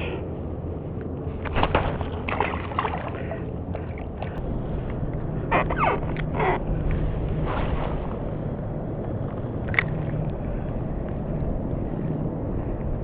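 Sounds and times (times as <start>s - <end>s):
wind rumbling on microphone: 0.0s - 13.0s
water splashing against kayak hull: 1.4s - 4.4s.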